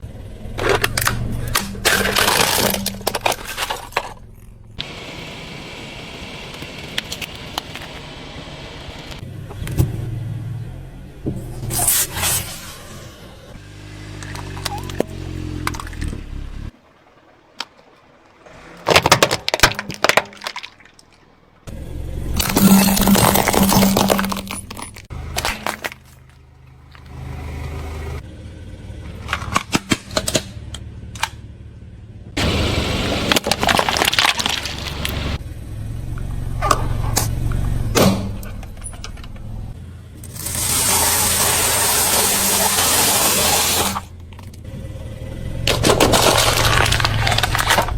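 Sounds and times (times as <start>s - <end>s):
car engine running: 0.0s - 11.8s, 21.6s - 47.9s
tyre crushing plastic toys: 0.5s - 4.7s, 18.6s - 21.2s, 22.4s - 27.2s, 33.1s - 35.4s, 45.6s - 47.9s.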